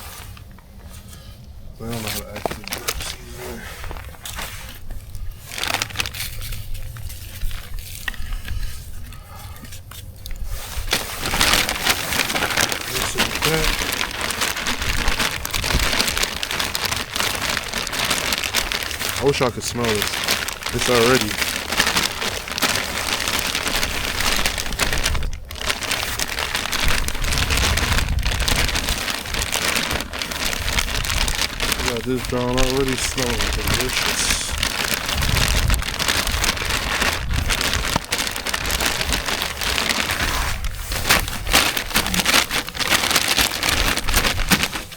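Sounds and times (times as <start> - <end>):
precipitation pattering: 10.9 - 44.9.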